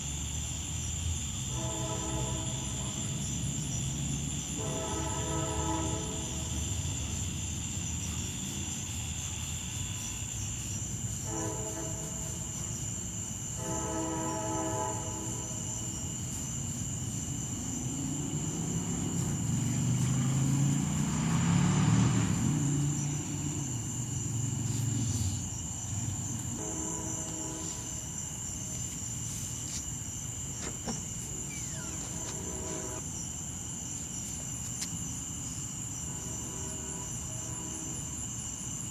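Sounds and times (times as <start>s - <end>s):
night insects chirring: 0.0s - 38.9s
train horn blasts: 1.5s - 3.2s, 4.5s - 6.8s, 11.2s - 12.7s, 13.5s - 16.0s, 26.4s - 28.2s, 31.9s - 33.1s, 36.0s - 38.1s
locomotive engine rumble: 15.0s - 29.3s.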